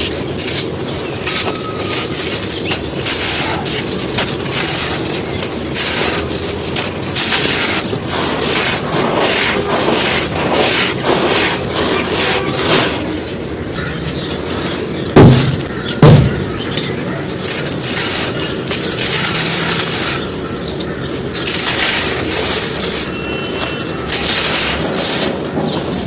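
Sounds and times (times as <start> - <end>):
sand shapes crunching: 0.0 - 13.4, 14.1 - 26.0
sharp cracks: 14.2 - 26.0.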